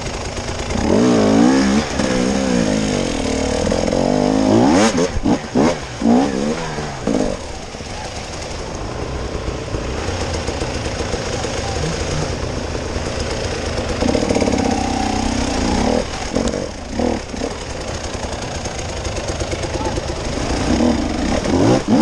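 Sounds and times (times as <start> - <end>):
off-road vehicle engine running: 0.0 - 22.0.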